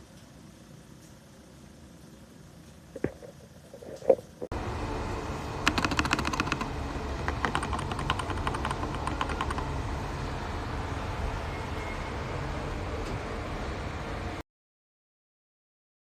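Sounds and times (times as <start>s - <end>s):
steady low hum: 0.0s - 14.4s
mechanical keyboard key clacks: 5.7s - 6.7s, 7.3s - 9.7s.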